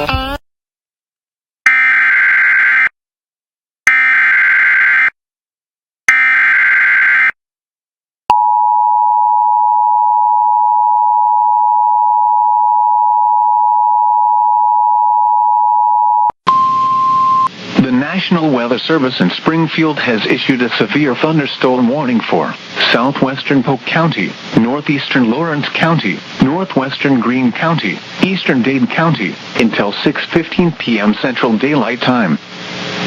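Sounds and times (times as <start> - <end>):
two-tone attention signal: 8.3 - 17.5.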